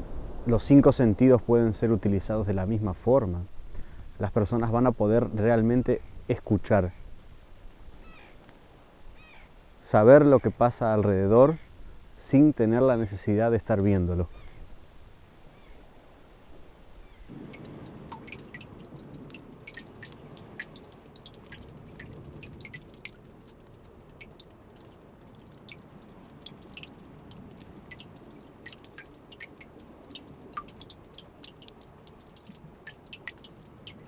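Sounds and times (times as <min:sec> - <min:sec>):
low steady water wash: 0:00.0 - 0:34.0
water drops plinking: 0:17.3 - 0:34.0.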